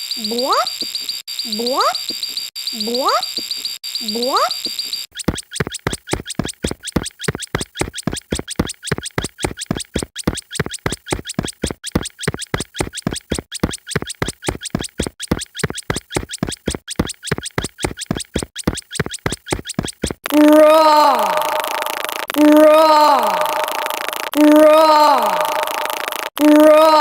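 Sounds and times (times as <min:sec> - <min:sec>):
rapid scratching strokes: 0:05.2 - 0:20.3.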